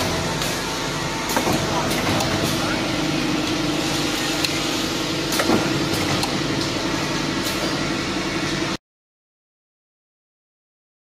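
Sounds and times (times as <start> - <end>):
machine humming: 0.0 - 8.8
sharp clicks and knocks: 5.3 - 6.7.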